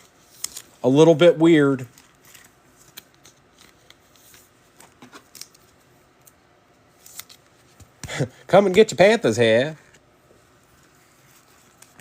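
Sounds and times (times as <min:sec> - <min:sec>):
cards clicking and rustling: 0:01.8 - 0:06.4, 0:07.0 - 0:09.0.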